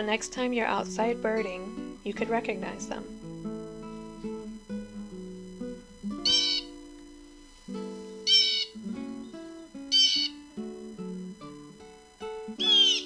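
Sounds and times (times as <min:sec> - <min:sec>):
acoustic guitar music: 0:00.0 - 0:13.0
blue jay harsh calls: 0:06.2 - 0:06.8, 0:08.2 - 0:08.8, 0:09.9 - 0:10.5, 0:12.6 - 0:13.0.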